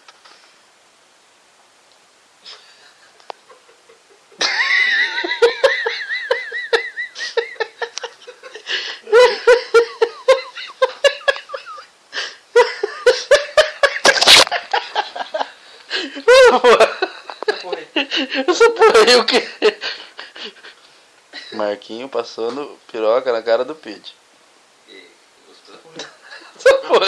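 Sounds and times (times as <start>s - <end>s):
people laughing hard: 2.5s - 11.9s, 12.6s - 20.8s, 26.0s - 27.0s.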